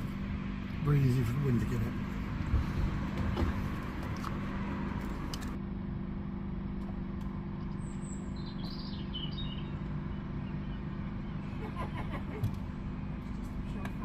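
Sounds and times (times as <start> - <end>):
low mechanical hum: 0.0 - 14.0
small bird chirping: 7.6 - 11.4.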